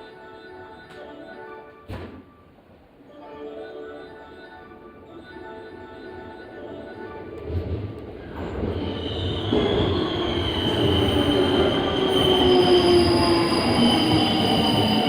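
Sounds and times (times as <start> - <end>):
wheels and brakes squealing: 8.4 - 15.0.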